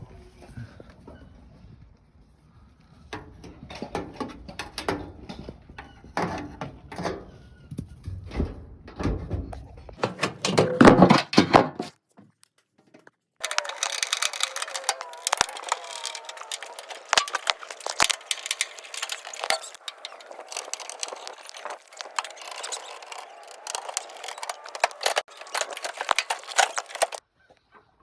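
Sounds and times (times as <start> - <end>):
dryer parts clattering: 10.0 - 11.9, 13.4 - 27.2.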